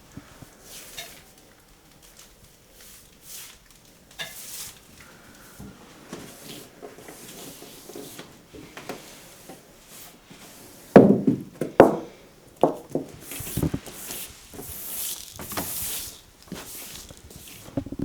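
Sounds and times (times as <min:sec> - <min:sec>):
hard wooden knocks: 0:11.0 - 0:13.2.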